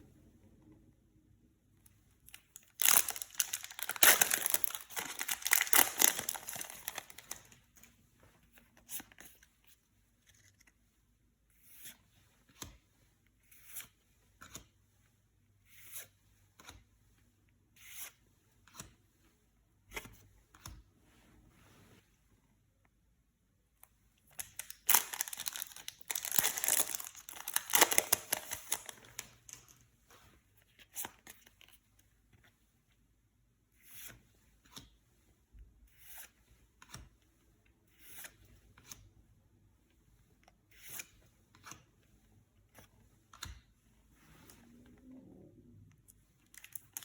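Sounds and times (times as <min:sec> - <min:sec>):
wrapper crinkling and soft taps: 0:02.3 - 0:07.9, 0:24.3 - 0:29.8
foil wrapper tearing: 0:02.7 - 0:07.5, 0:24.4 - 0:29.3.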